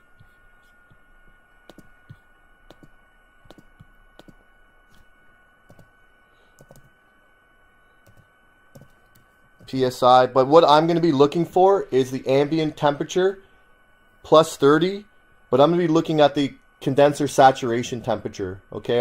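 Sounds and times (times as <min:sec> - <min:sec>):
faint high whine: 0:00.0 - 0:19.0.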